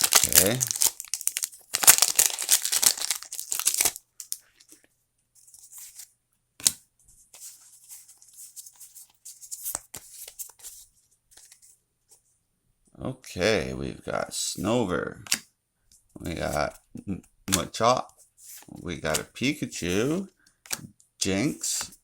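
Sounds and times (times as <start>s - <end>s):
foil wrapper tearing and crinkling: 0.0s - 4.4s
cards rustling: 0.0s - 11.7s, 16.2s - 16.8s, 17.5s - 22.0s.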